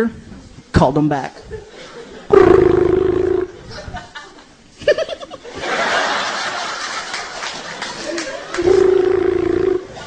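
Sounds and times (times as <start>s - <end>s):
audience laughter: 1.6s - 2.3s, 3.5s - 9.0s
audience applause: 6.1s - 8.8s
man imitating phone ringing: 8.6s - 9.9s.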